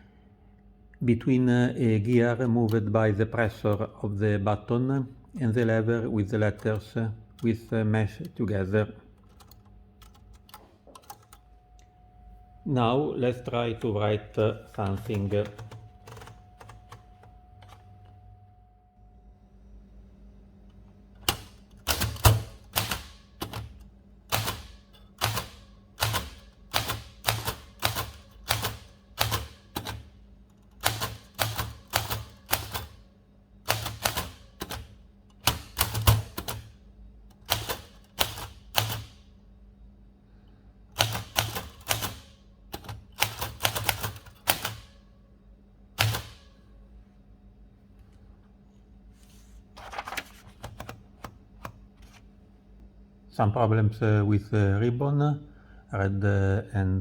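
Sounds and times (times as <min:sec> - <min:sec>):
typewriter keystroke clacks: 0:13.4 - 0:17.8, 0:21.2 - 0:33.0, 0:33.7 - 0:39.2, 0:41.0 - 0:45.0, 0:46.0 - 0:46.5, 0:49.9 - 0:51.8.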